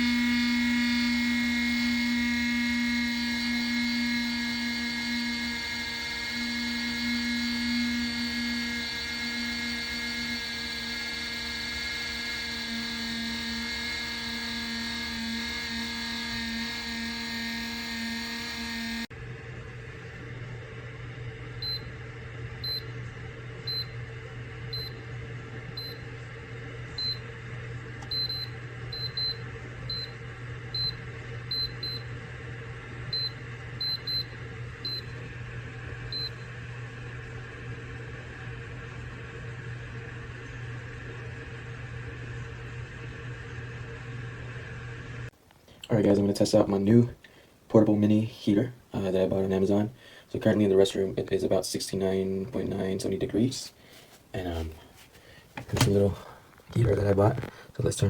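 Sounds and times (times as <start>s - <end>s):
low hum: 0.0s - 45.3s
heater fan motor whine: 0.0s - 58.0s.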